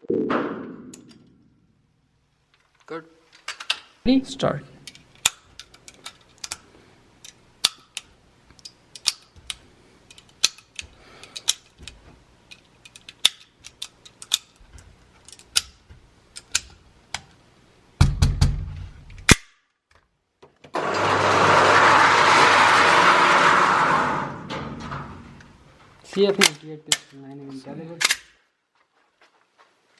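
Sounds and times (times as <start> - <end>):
gunshots: 0.0 - 1.0
steady noise: 0.0 - 2.4.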